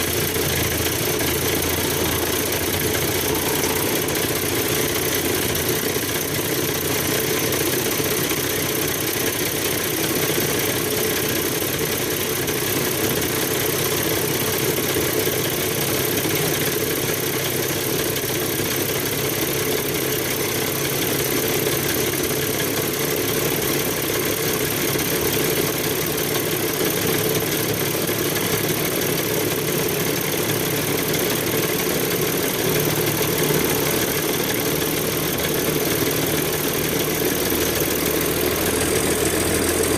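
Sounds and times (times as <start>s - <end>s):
generator engine drone: 0.0s - 8.0s, 29.3s - 39.9s.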